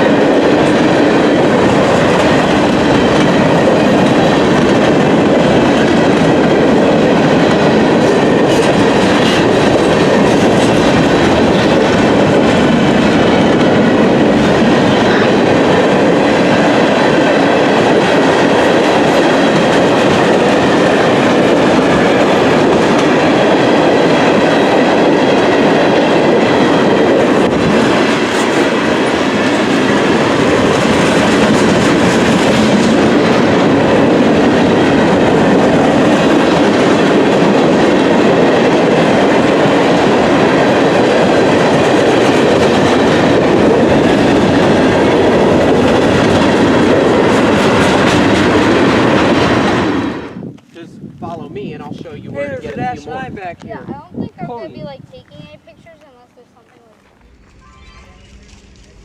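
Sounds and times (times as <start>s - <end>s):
train wheels running on rails: 0.0s - 50.8s, 55.1s - 59.0s.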